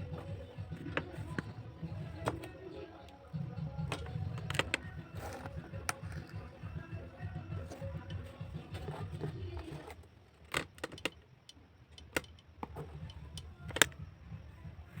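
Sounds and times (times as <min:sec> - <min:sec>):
sharp clicks and knocks: 0:03.7 - 0:06.5, 0:07.6 - 0:14.1.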